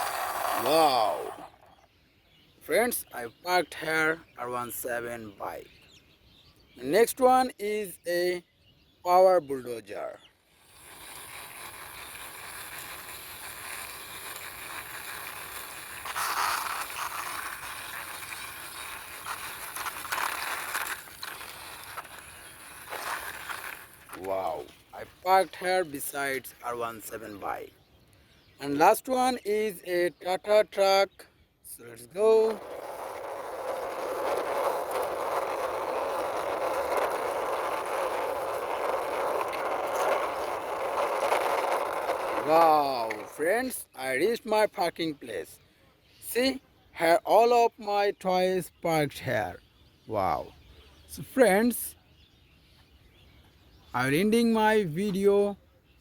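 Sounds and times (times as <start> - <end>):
toy plastic wheels rolling and scraping: 0.0 - 1.8, 10.5 - 27.6, 28.6 - 30.6, 31.9 - 45.0, 51.0 - 51.9.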